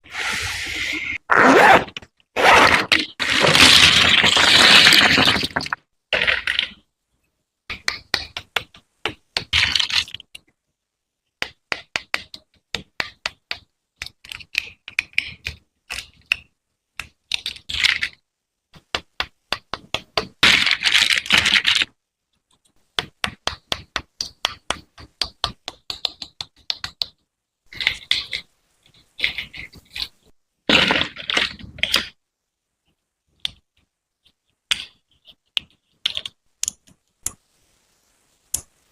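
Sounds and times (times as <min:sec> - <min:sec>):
plastic toy pieces rattling: 0:02.8 - 0:06.8, 0:20.4 - 0:21.9.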